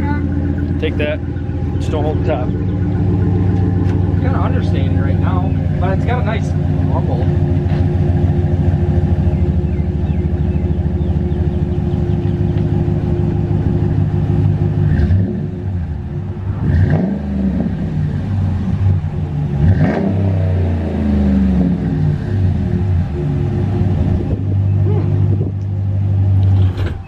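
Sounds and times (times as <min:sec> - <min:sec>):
pickup truck engine idling: 0:00.0 - 0:16.5
engine revving: 0:00.0 - 0:27.0.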